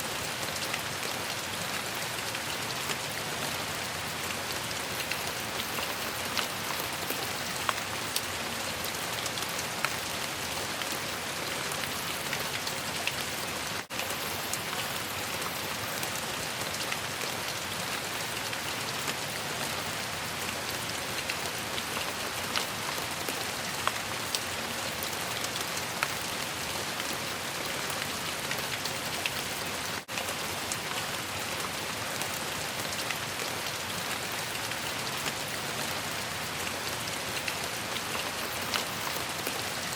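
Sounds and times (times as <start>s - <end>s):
steady rain falling: 0.0s - 39.9s
raindrops tapping: 4.9s - 8.3s.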